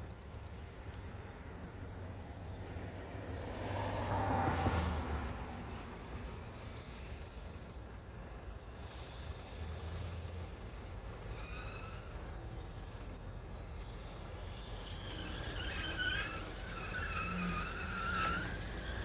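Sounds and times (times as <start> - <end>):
low traffic rumble: 0.0 - 19.0
brakes squealing: 8.2 - 19.0.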